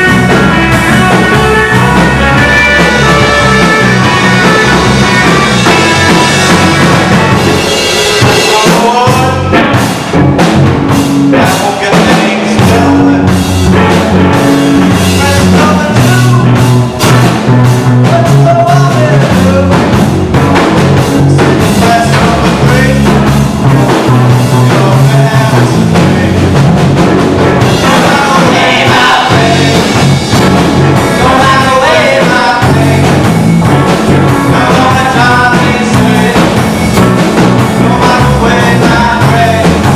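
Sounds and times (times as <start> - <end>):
rock song with drums and bass: 0.0 - 39.9
person singing: 8.2 - 9.7, 11.3 - 13.4, 15.0 - 16.7, 18.0 - 20.0, 21.3 - 26.5, 27.7 - 30.1, 31.0 - 33.3, 34.4 - 36.9, 37.6 - 39.9.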